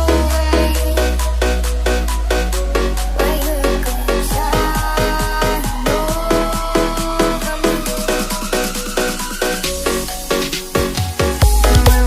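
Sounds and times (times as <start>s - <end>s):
electronic dance music: 0.0s - 12.0s
heavy deep bass: 0.0s - 12.0s.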